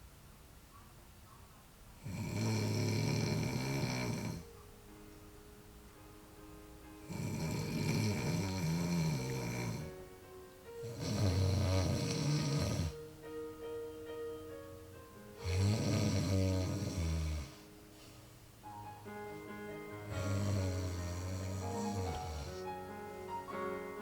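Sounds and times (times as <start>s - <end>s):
person snoring: 2.0s - 4.5s, 7.1s - 9.9s, 10.8s - 13.0s, 15.4s - 17.7s, 20.1s - 22.7s
background music with held notes: 3.2s - 24.0s.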